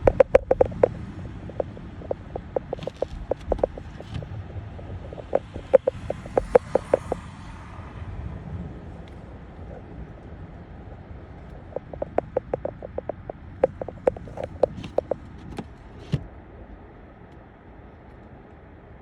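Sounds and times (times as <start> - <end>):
sharp irregular clicks: 0.0 - 7.2, 11.4 - 15.7
car driving rumble: 0.0 - 19.0.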